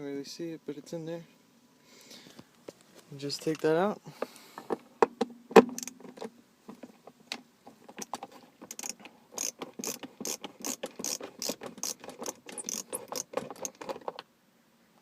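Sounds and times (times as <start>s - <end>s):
screwdriver ratchet clicks: 8.7s - 14.0s.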